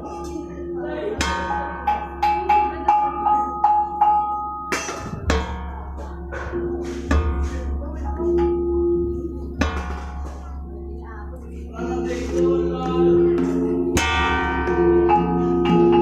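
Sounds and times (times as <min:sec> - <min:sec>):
gamelan bronze percussion ringing: 0:00.0 - 0:10.9, 0:11.8 - 0:16.0
heavier mallet strikes: 0:01.2 - 0:10.8, 0:12.9 - 0:16.0.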